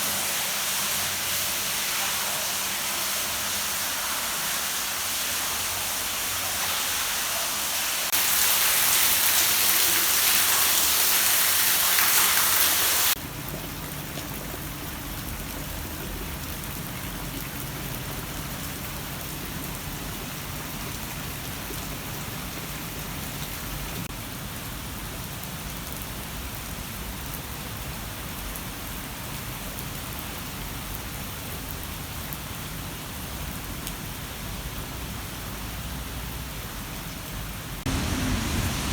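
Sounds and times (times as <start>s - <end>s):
water pouring and splashing: 0.0s - 24.2s, 37.8s - 38.9s.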